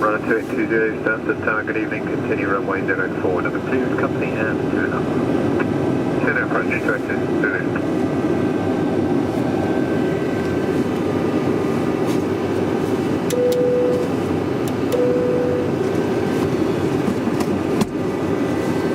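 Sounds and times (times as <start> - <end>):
aircraft engine and air rumble: 0.0 - 18.9
short beeps: 13.3 - 14.2, 14.9 - 15.7.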